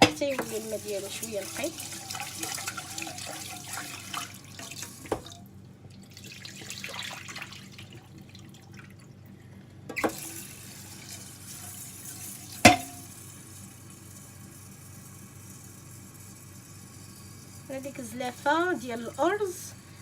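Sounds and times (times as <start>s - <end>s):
water sloshing in a bowl: 0.0s - 9.2s
knocks against bowl: 12.7s - 13.1s.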